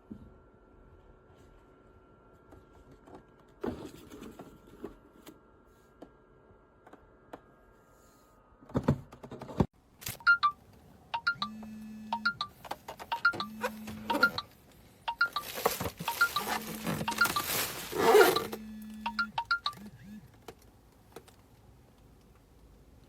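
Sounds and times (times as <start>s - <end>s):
electronic bleeping tune: 10.2s - 10.6s, 11.2s - 12.5s, 13.1s - 14.5s, 15.1s - 20.2s.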